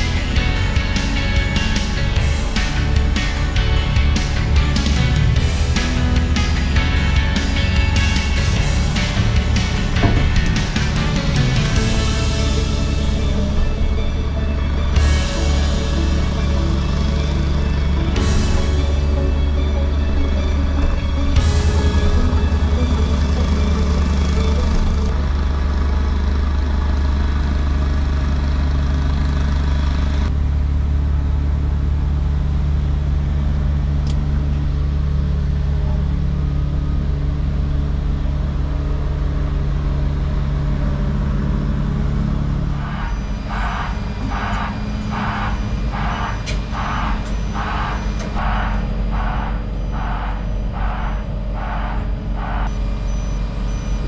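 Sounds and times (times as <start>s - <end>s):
reversing alarm beeping: 0.0s - 25.3s, 40.0s - 54.0s
diesel engine running: 0.0s - 54.0s.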